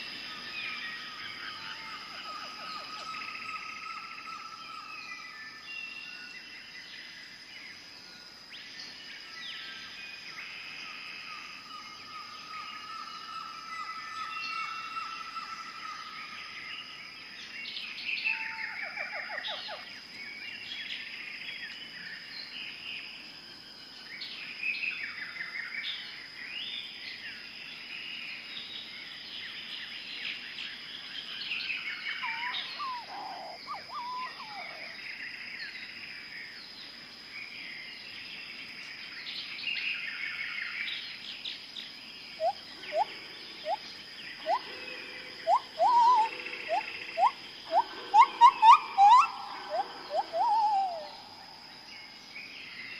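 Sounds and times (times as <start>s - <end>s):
birds chirping and trilling: 0.0s - 6.7s, 28.8s - 52.9s
high insect drone: 0.0s - 52.9s.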